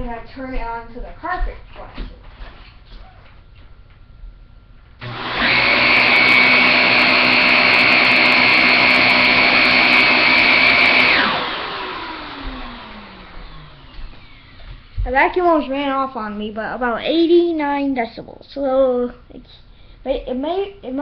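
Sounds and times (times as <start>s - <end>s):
upright vacuum cleaner running: 5.0s - 15.0s.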